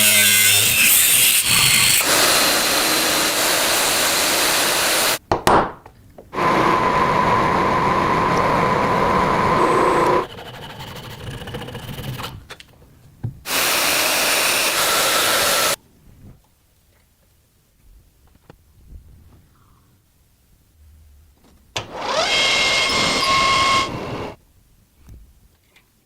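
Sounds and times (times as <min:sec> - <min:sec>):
power tool running: 0:00.0 - 0:05.2, 0:06.4 - 0:10.3, 0:13.5 - 0:15.8, 0:21.8 - 0:24.4.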